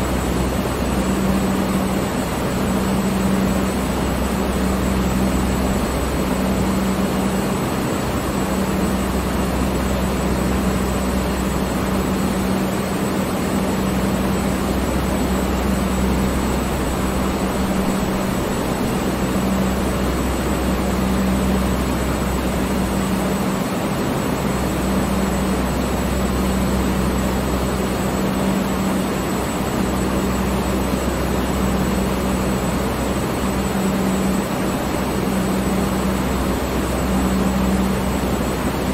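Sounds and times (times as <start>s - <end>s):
electric fan running: 0.0s - 38.9s.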